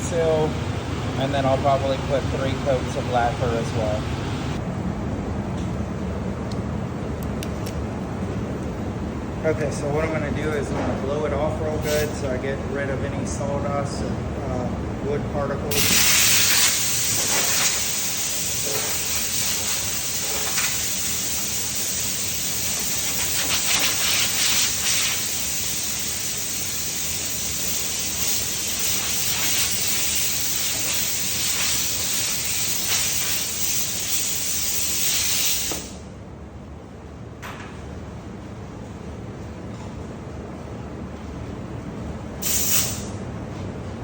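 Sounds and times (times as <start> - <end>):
compressed air hissing: 11.8 - 12.3, 15.7 - 36.1, 42.4 - 43.2.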